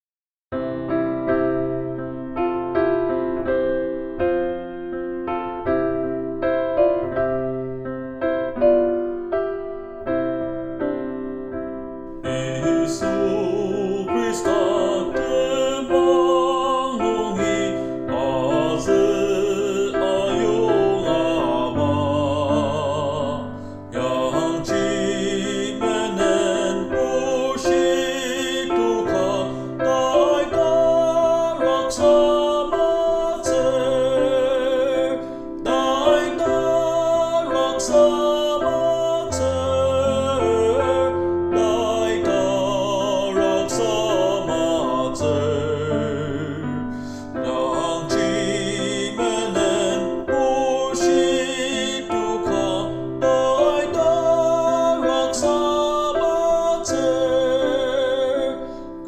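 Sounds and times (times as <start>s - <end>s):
keyboard accompaniment: 0.5s - 59.0s
person singing with vibrato: 12.1s - 59.0s.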